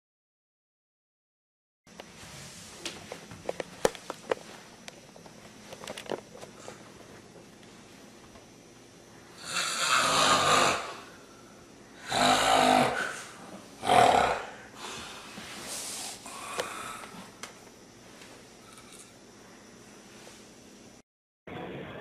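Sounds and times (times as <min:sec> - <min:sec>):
faint clicks and knocks: 0:02.8 - 0:07.5
person snoring: 0:09.3 - 0:11.3, 0:12.0 - 0:17.2.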